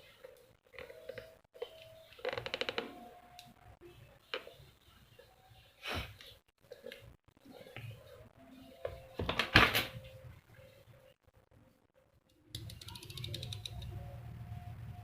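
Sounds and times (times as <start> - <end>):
small clicks: 12.3 - 14.0.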